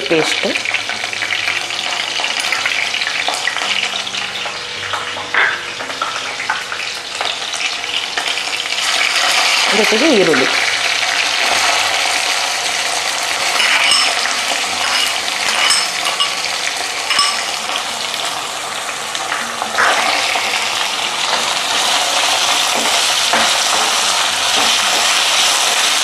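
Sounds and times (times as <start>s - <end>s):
onions sizzling in oil: 0.0s - 26.0s.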